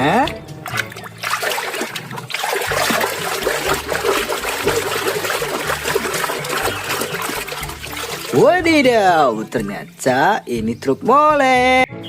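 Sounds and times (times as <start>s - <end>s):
water running and splashing: 0.2s - 10.1s.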